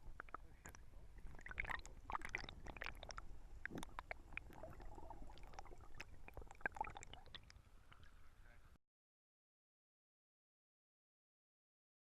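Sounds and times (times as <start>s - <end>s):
small water splashes: 0.0s - 8.3s.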